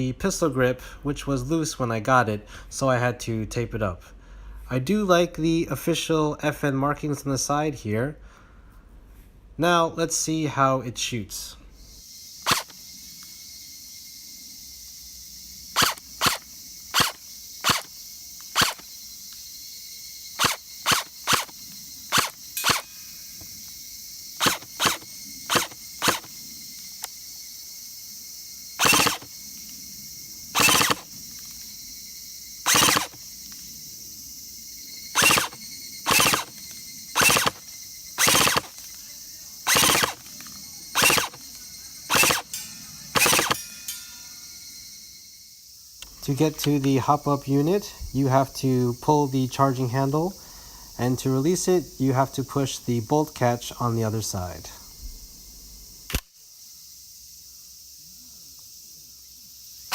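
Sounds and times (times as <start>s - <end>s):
airsoft gun firing: 12.5s - 12.7s, 15.8s - 16.4s, 17.0s - 17.9s, 18.6s - 18.8s, 20.4s - 21.5s, 22.1s - 22.9s, 24.4s - 26.3s, 28.8s - 29.3s, 30.6s - 31.1s, 32.7s - 33.2s, 35.2s - 36.6s, 37.2s - 37.6s, 38.2s - 38.8s, 39.7s - 40.3s, 41.0s - 41.4s, 42.1s - 42.5s, 43.2s - 43.6s.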